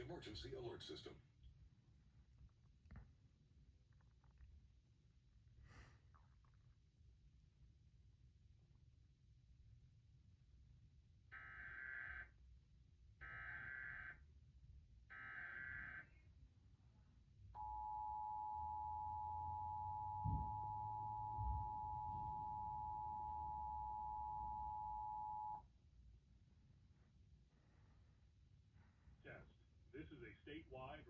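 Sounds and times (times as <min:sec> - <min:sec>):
steady two-tone alert signal: 0:17.6 - 0:25.6.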